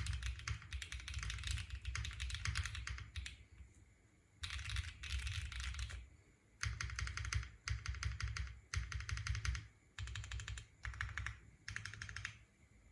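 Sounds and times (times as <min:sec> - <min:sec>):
fast typing on mechanical keyboard: 0:00.0 - 0:03.4, 0:04.4 - 0:06.0, 0:06.6 - 0:12.4.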